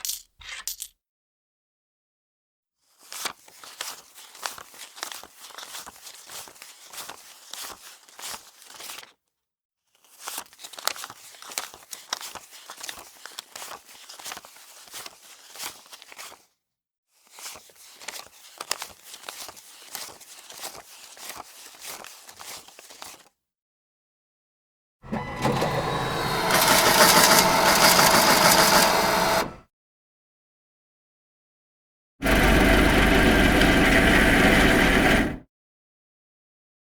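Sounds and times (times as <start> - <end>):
paper banknotes crinkling: 2.9 - 9.2, 9.9 - 16.6, 17.2 - 23.4, 25.6 - 29.4.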